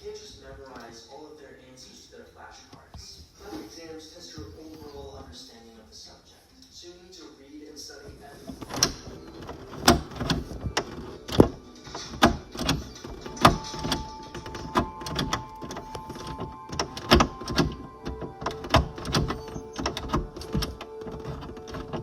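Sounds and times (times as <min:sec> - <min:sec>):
door handle and latch clicking: 0:08.5 - 0:22.0.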